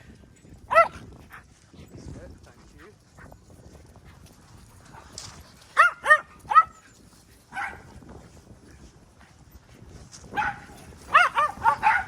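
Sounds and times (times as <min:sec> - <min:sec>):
small dog yapping: 0:10.4 - 0:12.0.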